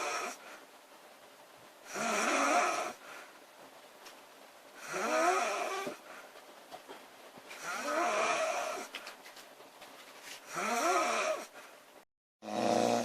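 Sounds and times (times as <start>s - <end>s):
woman snoring loudly: 0.0s - 0.4s, 1.9s - 3.0s, 4.8s - 6.0s, 7.6s - 8.9s, 10.5s - 11.5s, 12.4s - 13.0s.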